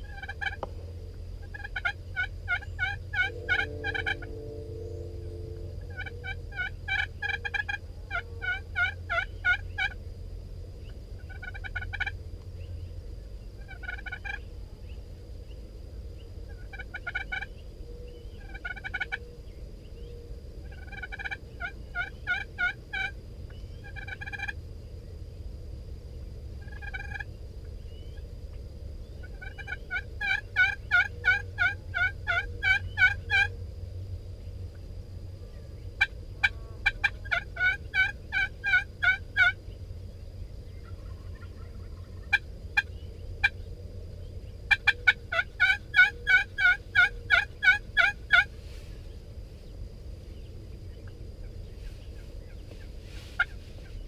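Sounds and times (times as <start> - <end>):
turkeys gobbling: 0.0 - 0.7, 1.4 - 10.0, 11.2 - 12.2, 13.6 - 14.4, 16.5 - 17.6, 18.4 - 19.2, 20.6 - 24.6, 26.6 - 27.3, 29.2 - 33.5, 36.0 - 39.6, 40.8 - 43.6, 44.7 - 48.5
wind rumble on microphone: 0.0 - 39.0.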